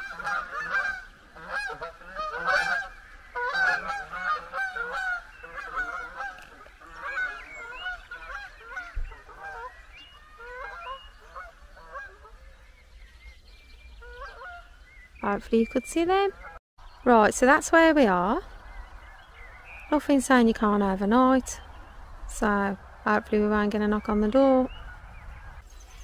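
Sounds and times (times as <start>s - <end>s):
geese honking: 0.0s - 12.6s, 14.0s - 15.4s.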